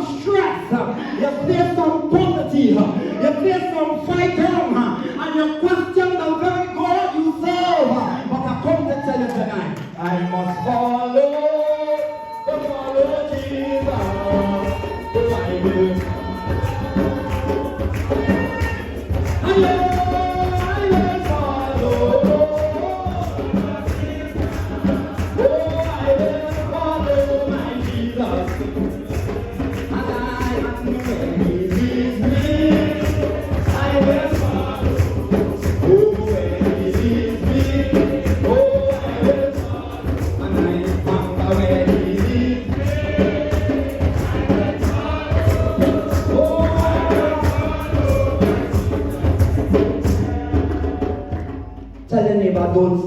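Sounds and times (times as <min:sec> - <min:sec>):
voices singing gospel: 0:00.0 - 0:53.0
instrumental accompaniment with beat: 0:12.6 - 0:52.2.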